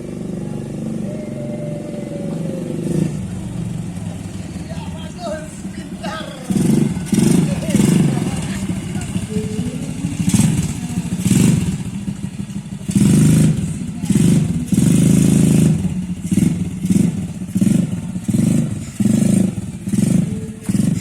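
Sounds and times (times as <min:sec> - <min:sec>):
small atv engine revving: 0:00.0 - 0:21.0.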